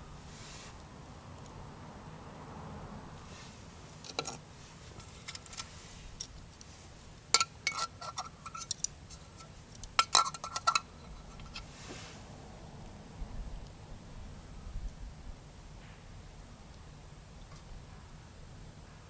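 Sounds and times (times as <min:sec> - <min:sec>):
metal cookware clinking: 0:07.4 - 0:11.5.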